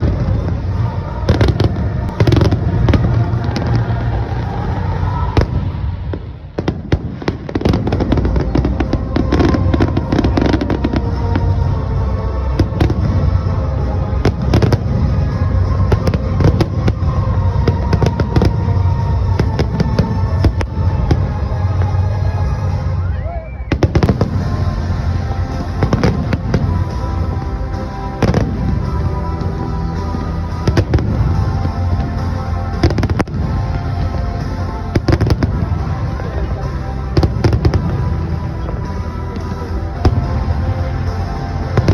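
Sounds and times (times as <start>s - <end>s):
fireworks bangs and crackles: 0.0s - 41.9s
low rumble: 0.0s - 41.9s.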